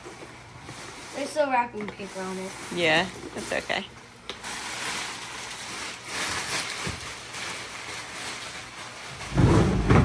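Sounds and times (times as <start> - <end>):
wrapping paper rustling: 0.0 - 10.0
loud thump: 9.4 - 10.0.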